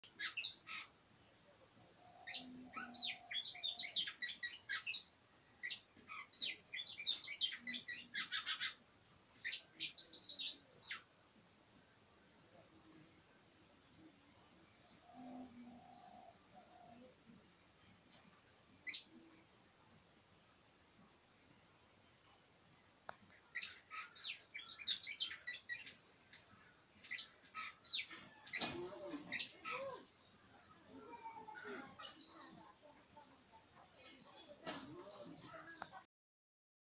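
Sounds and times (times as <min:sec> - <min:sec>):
bird singing trills: 0:02.0 - 0:08.8, 0:23.6 - 0:30.0
bird singing whistled notes: 0:24.2 - 0:27.3.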